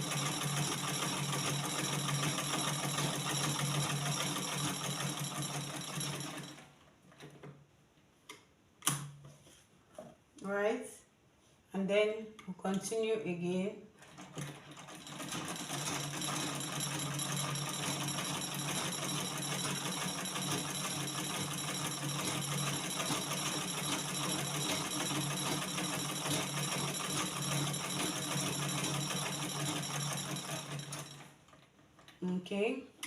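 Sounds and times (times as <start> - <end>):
treadle sewing machine stitching: 0.0 - 7.4, 14.0 - 31.4.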